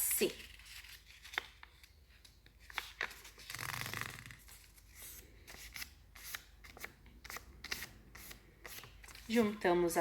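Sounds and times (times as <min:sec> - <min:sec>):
paper rustling and crinkling: 0:00.3 - 0:05.9.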